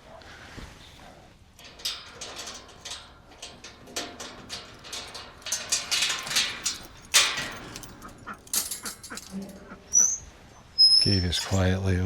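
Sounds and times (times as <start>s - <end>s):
farm gate scraping and rattling: 1.1s - 11.7s.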